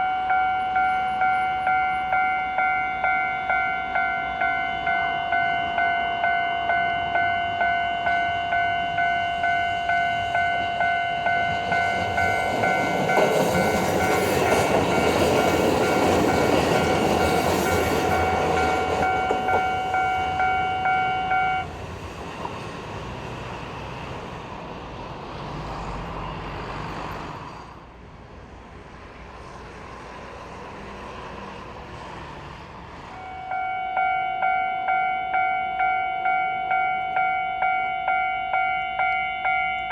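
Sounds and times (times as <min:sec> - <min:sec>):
level crossing alarm dinging: 0:00.0 - 0:21.7, 0:33.2 - 0:39.9
electric train passing: 0:00.0 - 0:39.9.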